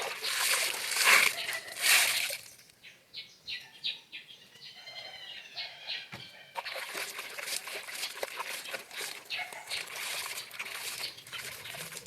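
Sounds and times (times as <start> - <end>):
bird chirping: 2.4 - 6.8, 9.2 - 12.0.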